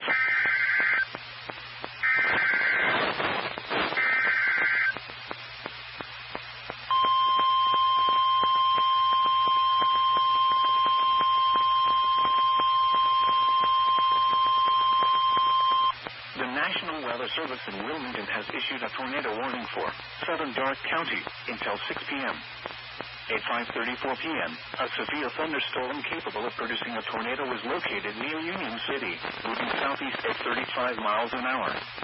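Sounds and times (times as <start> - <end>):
steady alarm tone: 0.0 - 1.0, 2.0 - 2.9, 4.0 - 5.0, 6.9 - 16.0
screeching data tones: 0.0 - 1.1, 2.0 - 5.0, 6.9 - 16.0
radio reception crackle: 0.0 - 32.0.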